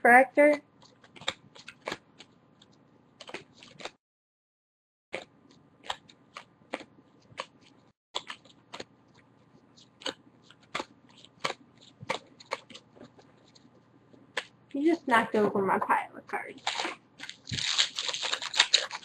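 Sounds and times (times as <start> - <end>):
trading cards clicking and snapping: 0.4 - 2.4, 3.2 - 4.0, 9.8 - 13.6, 14.3 - 14.6, 16.6 - 19.0.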